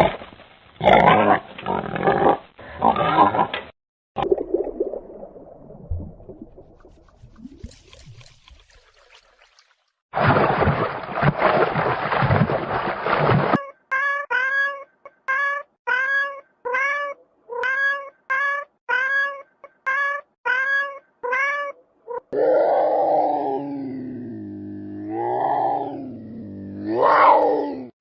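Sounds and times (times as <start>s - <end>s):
cat meowing: 13.6s - 22.2s.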